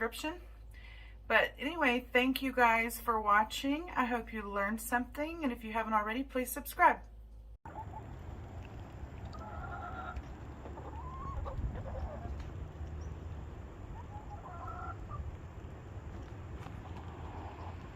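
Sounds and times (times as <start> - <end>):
chickens clucking: 7.7 - 17.9.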